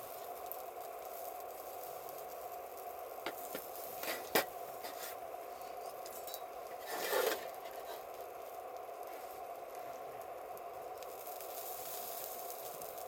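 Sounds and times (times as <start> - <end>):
fire and boiling hiss: 0.0 - 13.0
short scrape: 4.0 - 5.2, 6.8 - 8.0.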